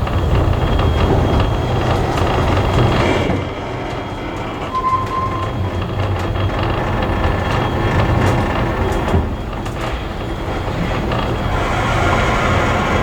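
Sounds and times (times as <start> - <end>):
train rumbling on rails: 0.0 - 13.0
short high squeal: 4.7 - 5.7.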